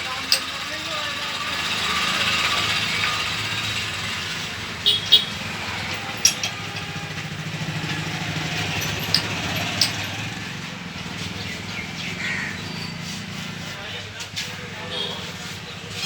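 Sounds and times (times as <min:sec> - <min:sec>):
motorcycle engine idling: 0:00.0 - 0:12.8.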